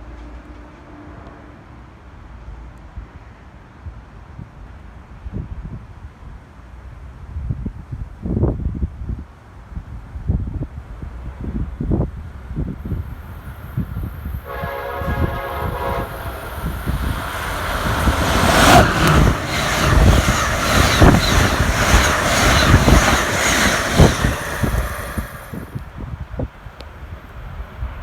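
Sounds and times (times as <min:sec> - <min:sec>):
train horn: 0:00.0 - 0:01.9, 0:14.4 - 0:20.2
train passing at speed: 0:00.0 - 0:06.9, 0:11.0 - 0:28.0.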